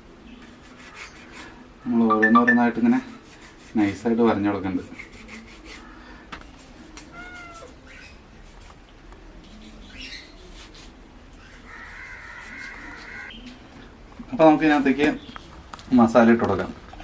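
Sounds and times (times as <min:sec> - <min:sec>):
cat meowing: 0:07.0 - 0:07.8.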